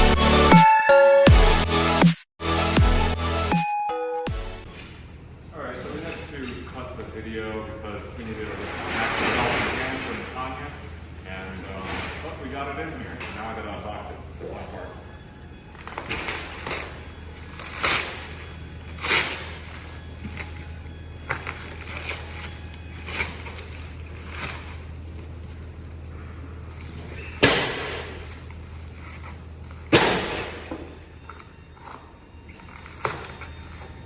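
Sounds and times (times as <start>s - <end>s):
steady low hum: 4.3s - 34.0s
packaging rustling and scraping: 7.9s - 34.0s
sharp knocks: 27.4s - 28.2s, 29.9s - 31.0s.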